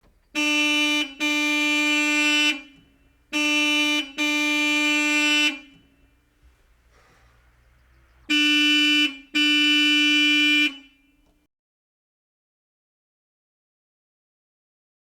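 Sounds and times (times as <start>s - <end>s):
car horn honking: 0.3s - 6.7s, 8.0s - 11.4s.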